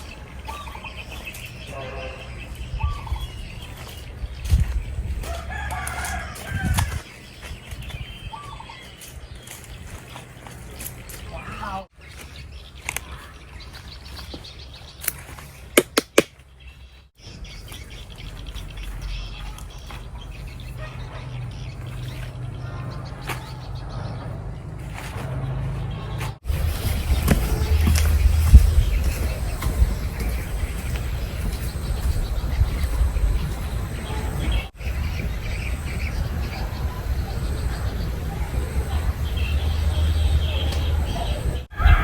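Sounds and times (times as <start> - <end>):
faint birds chirping: 0.0 - 42.0
sharp clicks: 15.8 - 16.3
low outdoor rumble: 17.2 - 42.0.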